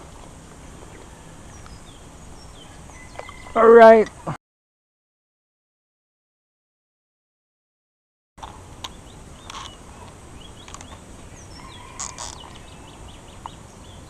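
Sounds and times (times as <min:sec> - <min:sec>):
birds chirping: 0:00.0 - 0:04.4, 0:08.5 - 0:14.0
steady background hiss: 0:00.0 - 0:04.4, 0:08.4 - 0:14.0.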